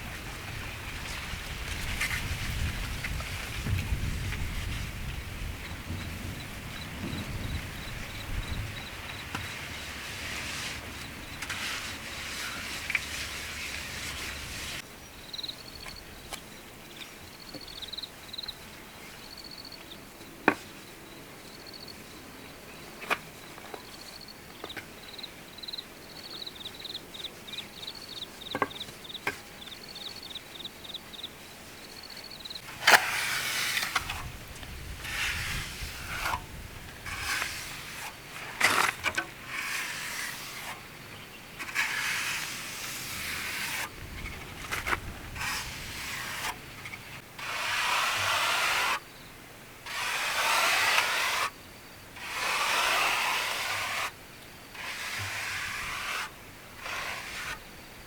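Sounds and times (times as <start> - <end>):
rustling and scraping handling: 0.0 - 14.8, 31.4 - 49.0
insect chirping: 5.6 - 9.9, 15.1 - 16.1, 17.4 - 18.6, 19.2 - 20.0, 23.4 - 32.7.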